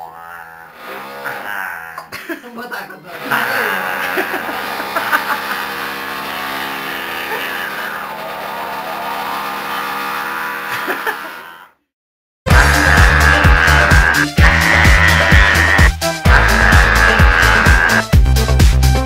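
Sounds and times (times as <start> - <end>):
man imitating a drill: 0.0 - 2.1, 3.2 - 11.8, 12.5 - 18.1
music: 12.5 - 19.0.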